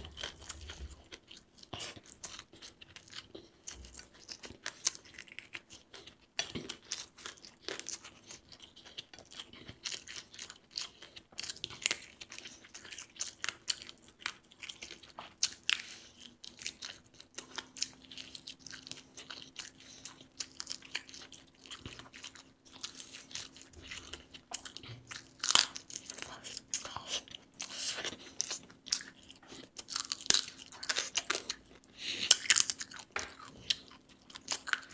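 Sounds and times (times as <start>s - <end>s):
person crunching and chewing: 0.0s - 34.9s.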